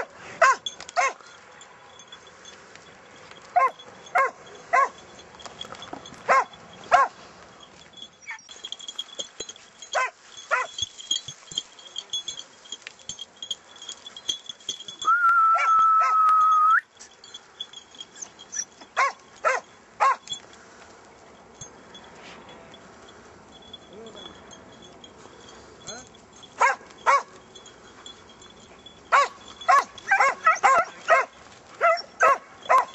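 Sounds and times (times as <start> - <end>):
hounds barking: 0.0 - 1.3, 3.5 - 5.0, 6.2 - 7.2, 9.9 - 10.8, 19.0 - 20.3, 26.4 - 27.4, 28.7 - 32.9.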